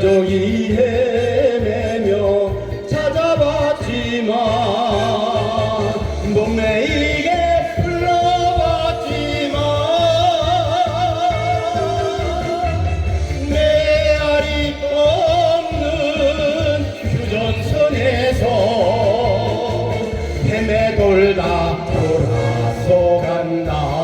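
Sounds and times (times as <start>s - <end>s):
backing music with low beat: 0.0s - 24.0s
person singing with vibrato: 0.0s - 24.0s.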